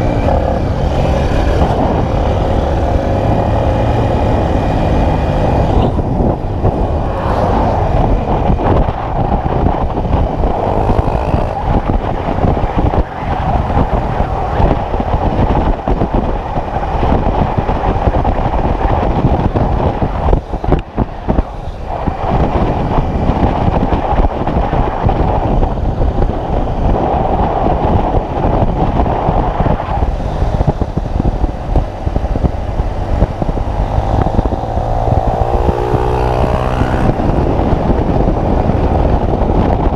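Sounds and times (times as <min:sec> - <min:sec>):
motorcycle engine running: 0:00.0 - 0:21.6, 0:30.0 - 0:39.9
wind noise on microphone: 0:00.0 - 0:39.9.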